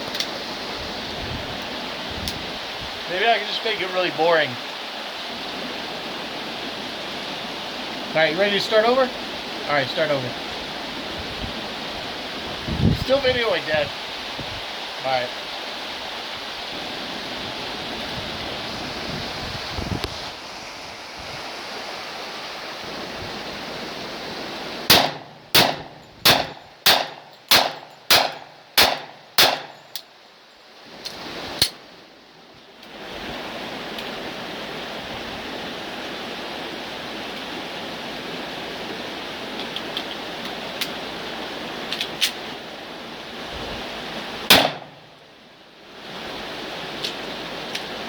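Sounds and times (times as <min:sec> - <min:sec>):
wind-like background noise: 0:00.0 - 0:48.0
rifle shots: 0:24.9 - 0:29.8, 0:44.5 - 0:45.1.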